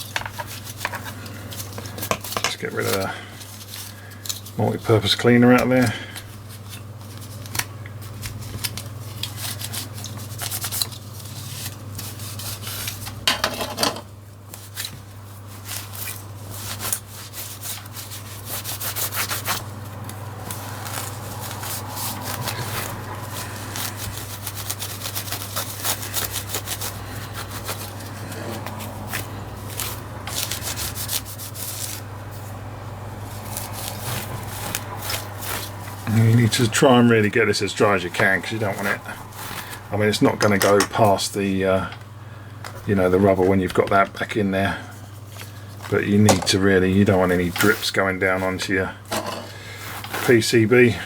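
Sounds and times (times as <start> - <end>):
low steady hum: 0.0 - 51.0
scratchy rubbing strokes: 9.1 - 13.1, 14.6 - 40.6.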